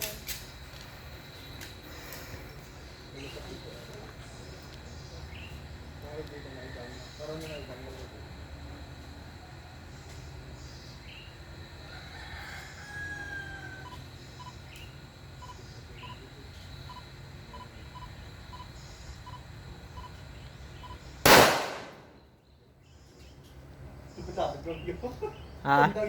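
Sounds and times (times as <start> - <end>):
rooster crowing: 11.8 - 14.0
gunshot: 21.2 - 22.2.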